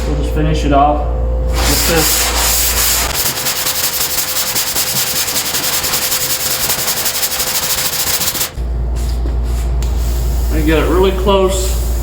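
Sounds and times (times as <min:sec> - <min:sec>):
hand sanding with abrasive paper: 0:01.6 - 0:08.6.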